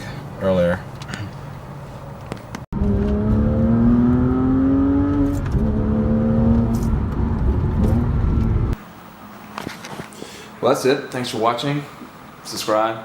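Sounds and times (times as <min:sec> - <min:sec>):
car engine accelerating: 0:02.7 - 0:08.8.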